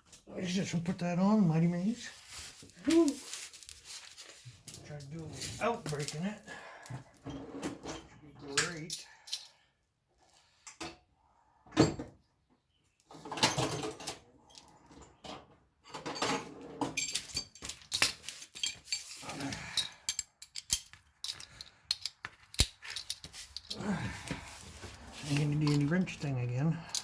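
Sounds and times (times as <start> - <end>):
metal tools clinking and clattering: 7.2 - 9.6, 15.9 - 27.0.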